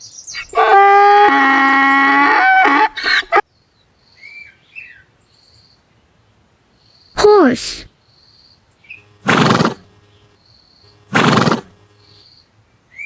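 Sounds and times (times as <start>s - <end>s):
donkey braying: 0.4s - 3.4s, 9.2s - 9.9s, 11.0s - 11.8s.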